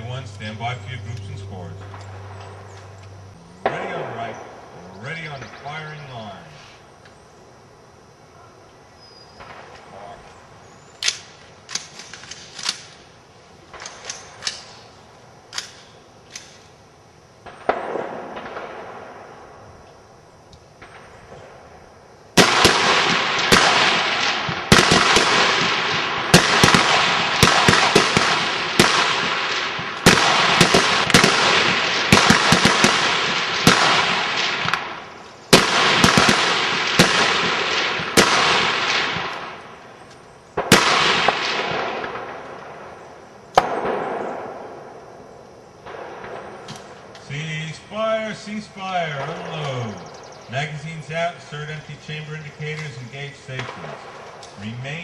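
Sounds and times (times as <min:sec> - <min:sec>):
rifle shots echoing: 0:00.6 - 0:06.3, 0:09.4 - 0:09.8, 0:17.4 - 0:19.6, 0:22.4 - 0:55.0.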